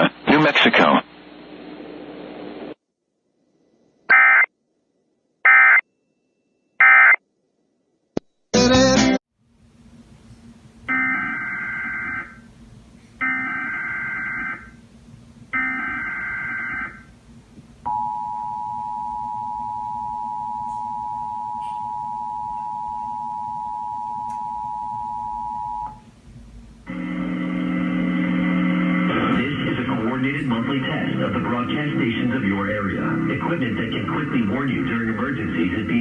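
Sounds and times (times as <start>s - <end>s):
two-tone attention signal: 17.9s - 25.9s.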